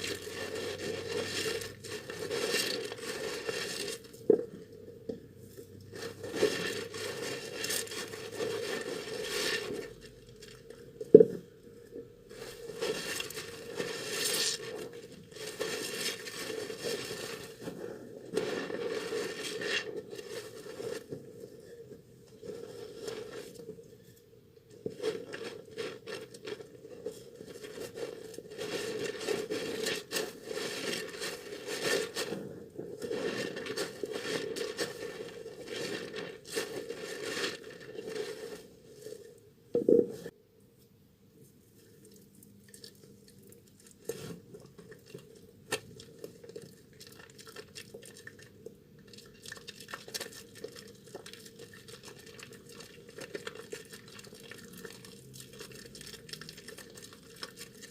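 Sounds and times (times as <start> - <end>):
wet soap lathered by hand: 41.8 - 57.9.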